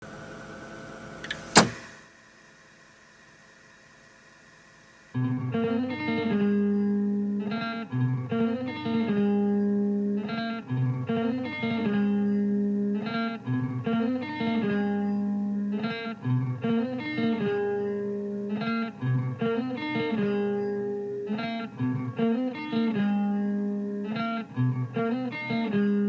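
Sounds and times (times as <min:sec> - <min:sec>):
plucked guitar notes: 0:05.2 - 0:26.0.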